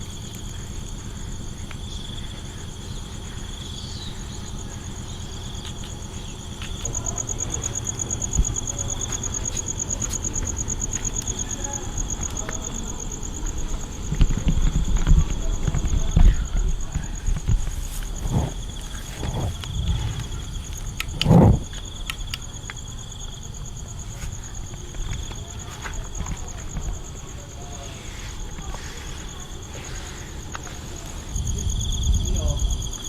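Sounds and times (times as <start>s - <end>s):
insects droning: 0.0s - 33.0s
rapidly pulsing insect call: 0.0s - 33.0s
low rumble: 4.1s - 22.0s.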